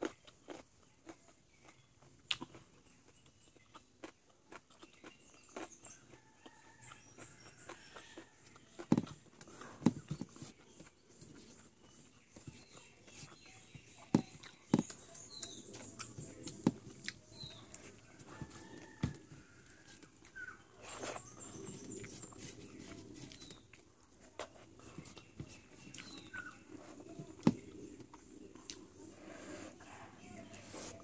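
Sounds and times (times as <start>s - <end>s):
chewing: 0.0s - 31.0s.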